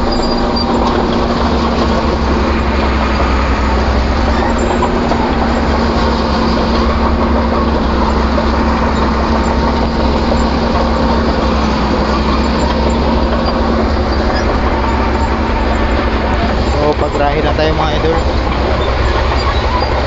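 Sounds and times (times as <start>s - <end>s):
diesel engine droning: 0.0s - 20.0s.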